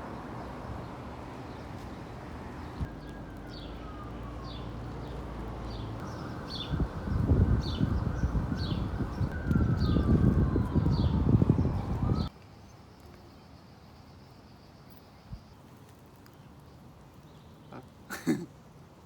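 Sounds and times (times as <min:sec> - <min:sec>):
birds chirping: 0:00.0 - 0:12.3.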